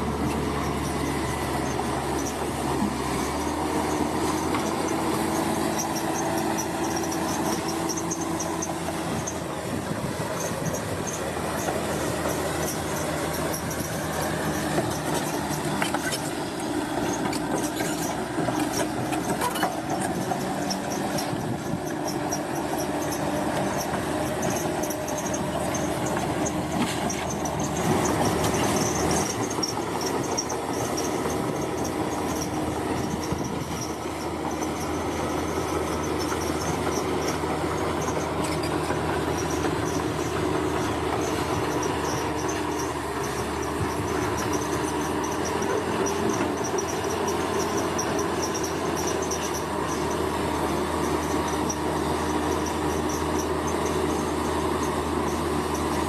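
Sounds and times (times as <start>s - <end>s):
diesel engine running: 0.0s - 56.0s
steel tracks squealing: 0.0s - 56.0s.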